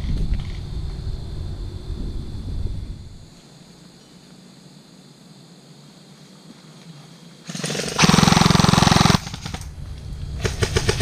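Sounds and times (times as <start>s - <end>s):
low outdoor ambient noise: 0.0s - 11.0s
airsoft gun firing full-auto: 7.5s - 9.7s, 10.4s - 11.0s.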